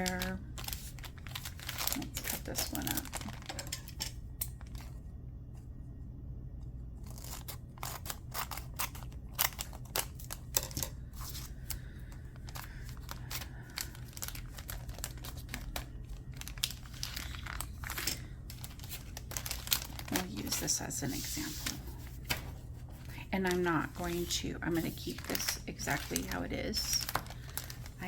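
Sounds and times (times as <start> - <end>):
packaging crinkling and rustling: 0.0 - 5.0, 7.0 - 28.0
scissors snipping packaging: 7.0 - 10.5.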